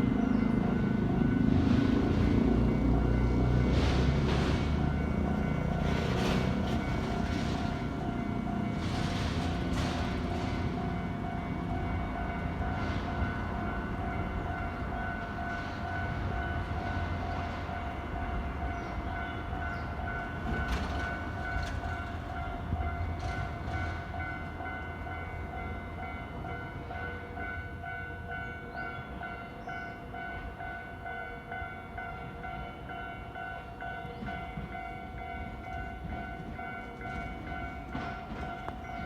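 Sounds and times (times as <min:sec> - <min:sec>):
train rumbling past: 0:00.0 - 0:39.0
wheels clacking over rail joints: 0:02.6 - 0:26.1, 0:33.8 - 0:39.0.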